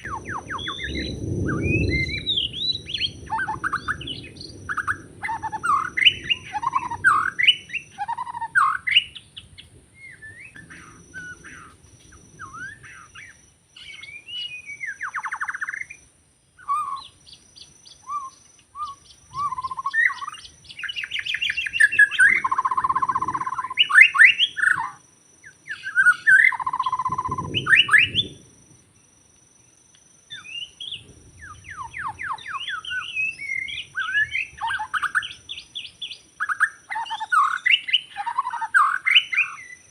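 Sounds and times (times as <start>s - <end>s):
bird singing varied whistles: 0.0s - 16.0s, 16.6s - 28.4s, 30.3s - 39.9s.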